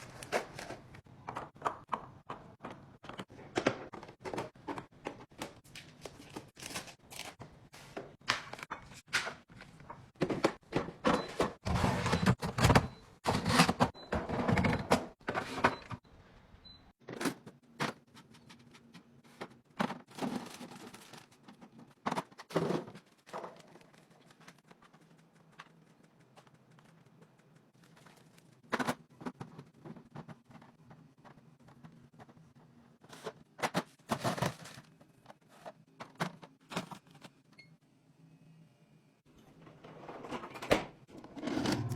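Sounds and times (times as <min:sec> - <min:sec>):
groceries set onto fridge shelves: 0:17.0 - 0:24.6, 0:33.1 - 0:37.3
plastic rustling: 0:20.0 - 0:21.9.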